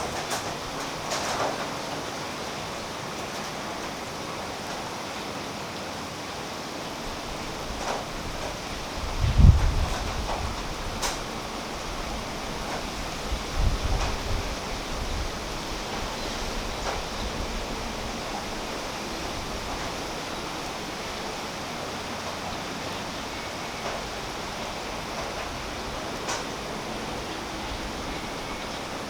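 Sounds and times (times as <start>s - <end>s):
rain on leaves: 0.0s - 29.0s
low wind rumble on microphone: 7.1s - 22.6s.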